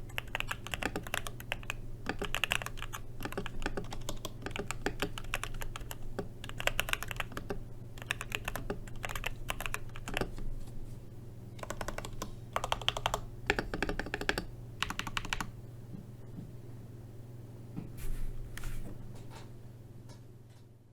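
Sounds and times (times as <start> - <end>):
mechanical keyboard typing: 0.1 - 10.4, 11.6 - 15.5.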